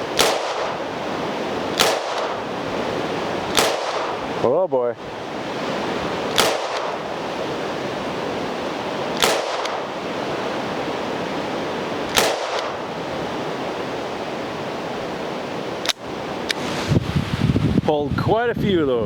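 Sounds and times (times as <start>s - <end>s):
steady hiss: 0.0s - 18.0s.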